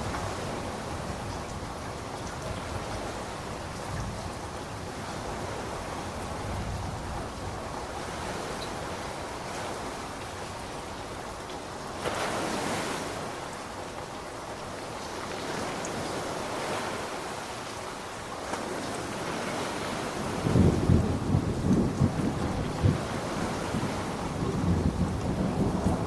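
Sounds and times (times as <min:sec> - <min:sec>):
ocean surf washing in: 0:12.0 - 0:26.0.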